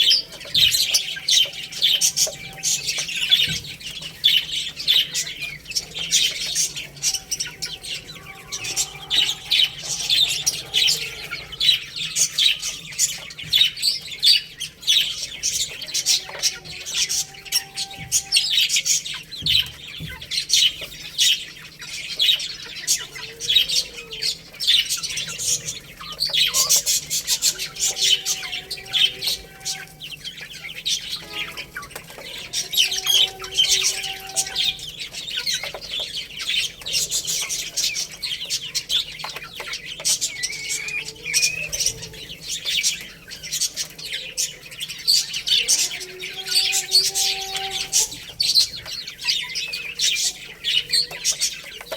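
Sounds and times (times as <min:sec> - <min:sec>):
baby chicks peeping: 0:00.0 - 0:51.9
lower longer bird calls: 0:05.0 - 0:13.4, 0:40.1 - 0:42.8.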